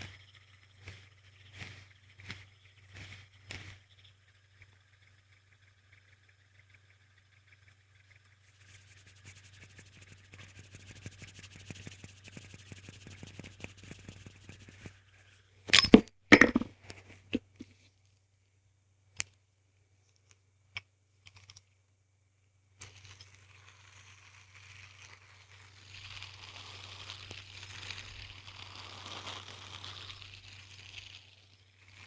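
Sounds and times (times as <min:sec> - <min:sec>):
fidget spinner whirring: 0:00.0 - 0:15.8, 0:22.7 - 0:32.0
steady low hum: 0:00.0 - 0:22.8
sharp clacks and knocks: 0:15.7 - 0:17.6.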